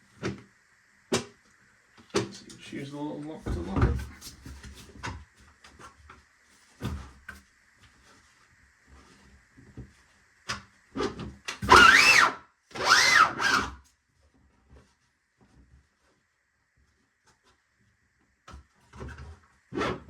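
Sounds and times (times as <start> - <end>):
loud squeaky scrapes: 11.7 - 13.7.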